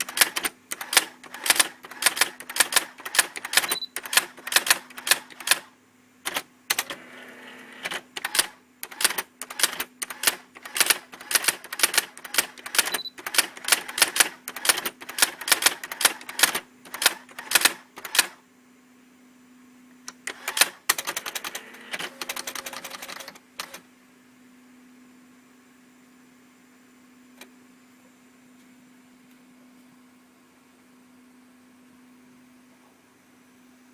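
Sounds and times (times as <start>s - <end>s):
typewriter motor hum: 0.0s - 18.4s, 20.1s - 23.9s.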